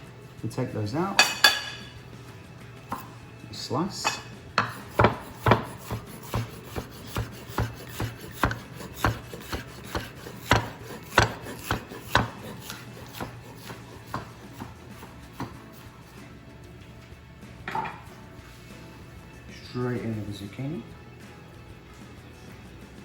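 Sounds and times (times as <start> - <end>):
knife slicing cucumber on board: 4.6 - 15.9.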